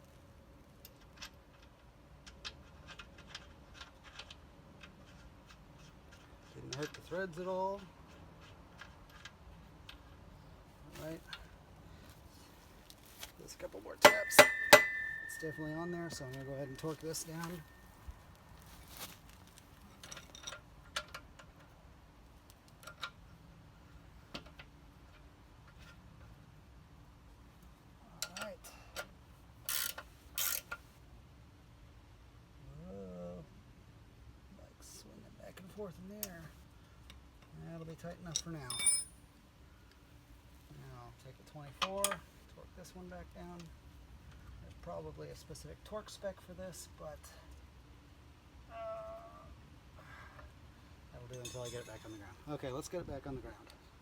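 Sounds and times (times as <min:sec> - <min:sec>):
small metallic clicks and ticks: 0:00.7 - 0:10.3, 0:14.0 - 0:21.8, 0:22.4 - 0:23.4, 0:24.3 - 0:26.4, 0:27.6 - 0:30.8, 0:41.6 - 0:42.3
ratchet wrench clicking: 0:29.7 - 0:30.8.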